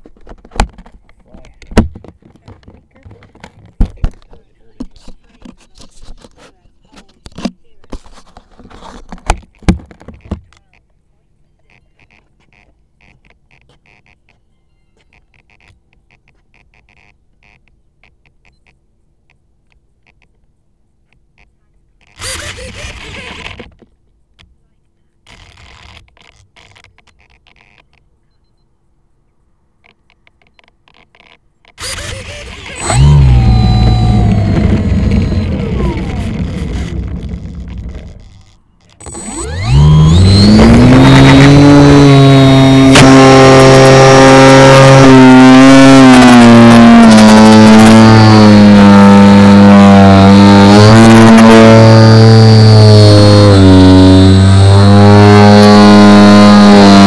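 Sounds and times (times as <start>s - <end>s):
handling scraping and clicks: 0.0s - 11.0s
model plane motor running: 22.1s - 23.7s, 31.8s - 57.0s.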